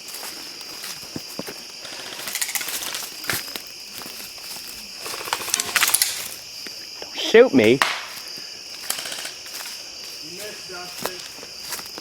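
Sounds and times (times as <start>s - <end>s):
high-pitched insect drone: 0.0s - 12.0s
rustling: 0.1s - 6.7s
sharp clicks: 5.1s - 6.4s, 8.8s - 9.4s.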